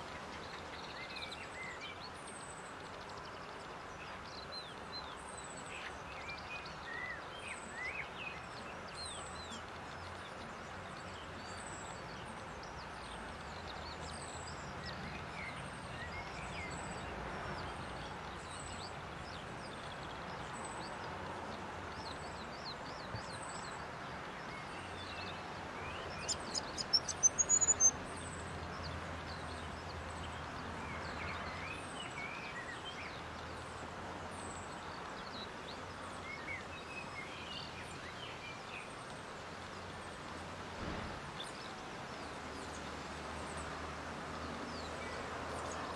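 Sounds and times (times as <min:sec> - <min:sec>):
small birds chirping: 0:24.4 - 0:30.3
outdoor hiss: 0:36.2 - 0:44.6.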